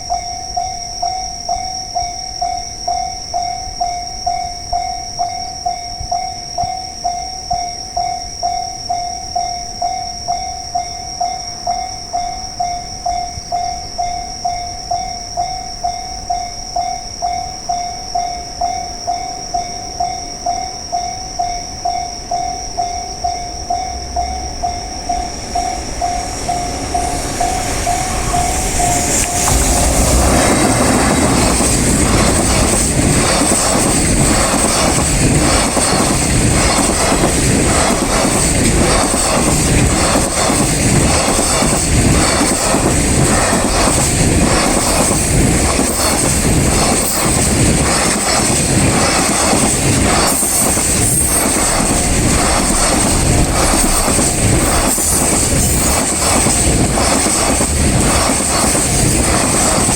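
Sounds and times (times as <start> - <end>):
train passing: 17.2 - 59.9.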